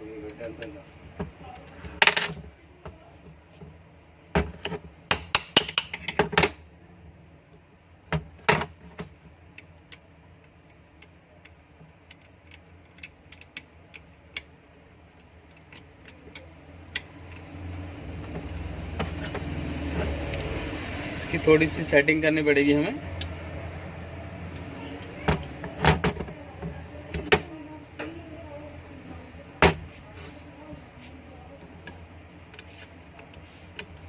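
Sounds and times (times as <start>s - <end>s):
metal parts and tools clattering: 1.6s - 2.6s, 4.4s - 6.6s.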